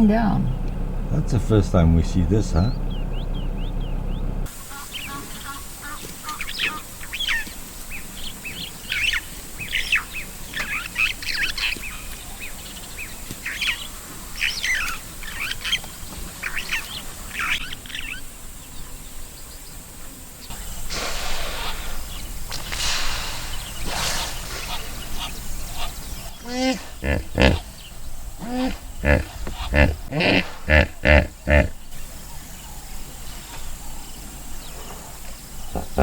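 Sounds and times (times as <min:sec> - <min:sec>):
wild birds chirping: 0:00.0 - 0:36.0
rushing noise: 0:20.5 - 0:27.4.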